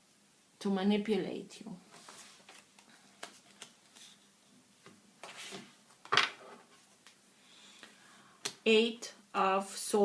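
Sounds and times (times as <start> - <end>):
card rustle: 2.0 - 4.2.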